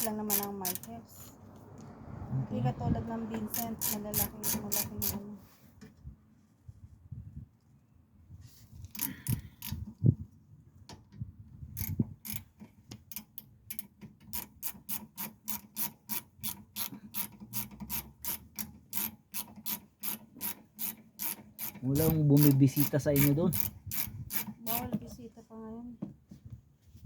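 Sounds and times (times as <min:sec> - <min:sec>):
ratchet wrench clicking: 0:00.0 - 0:01.0, 0:03.5 - 0:05.2, 0:08.8 - 0:10.0, 0:11.8 - 0:25.0.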